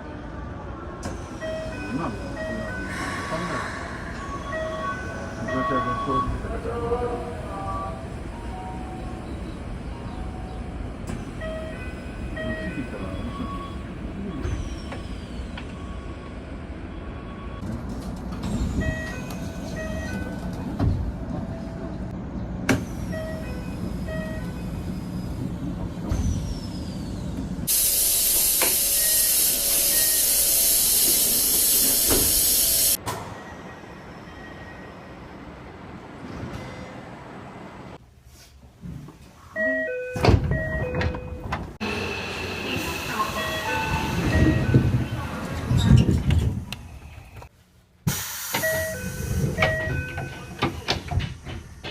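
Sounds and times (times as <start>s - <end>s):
train door chime tones: 1.3s - 3.5s, 4.1s - 6.5s, 11.2s - 15.0s, 18.8s - 20.4s, 23.0s - 24.8s, 27.8s - 35.3s, 39.6s - 42.0s, 43.1s - 45.1s, 48.6s - 50.7s
train rumble: 40.4s - 51.9s
compressed air hiss: 48.1s - 48.7s.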